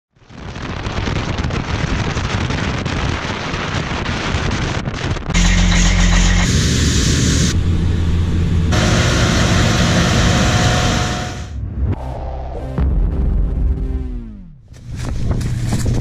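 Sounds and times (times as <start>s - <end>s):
farm machinery engines running: 5.4s - 11.6s.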